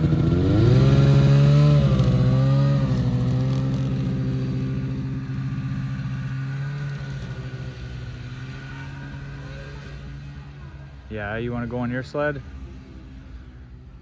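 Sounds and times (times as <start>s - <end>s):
snowmobile engine running: 0.0s - 12.4s.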